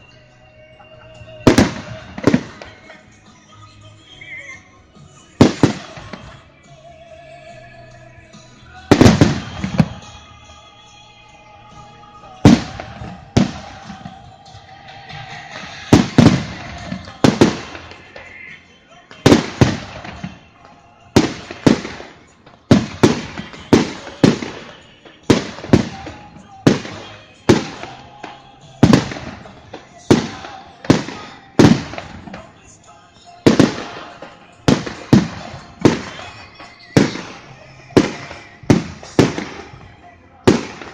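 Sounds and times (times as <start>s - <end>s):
faint music: 0.0s - 40.9s
fireworks bursting in loud bangs: 1.2s - 3.2s, 5.4s - 6.5s, 8.9s - 10.3s, 12.4s - 32.7s, 33.3s - 40.9s.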